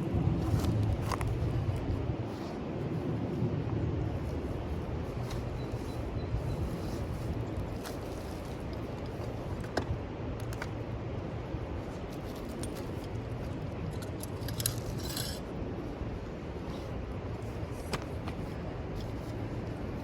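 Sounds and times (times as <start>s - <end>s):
thin metal parts clinking: 13.9s - 15.5s.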